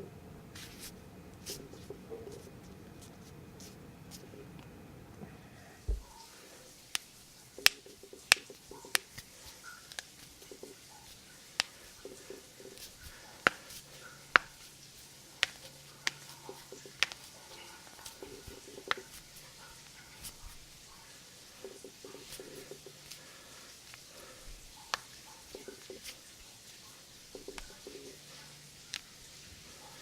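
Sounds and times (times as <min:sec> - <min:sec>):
soft handling noise: 0:00.5 - 0:30.0
knuckles cracking: 0:06.8 - 0:20.6, 0:21.6 - 0:26.3, 0:27.3 - 0:29.1.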